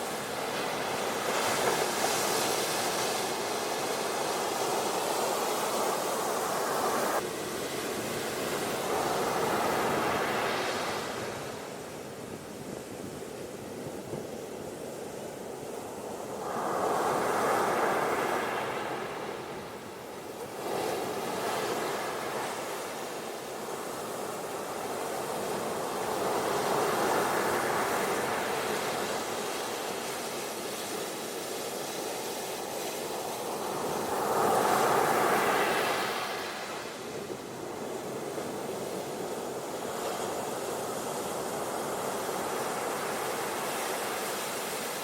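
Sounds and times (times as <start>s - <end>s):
ocean waves washing up beach: 15.0s - 45.0s.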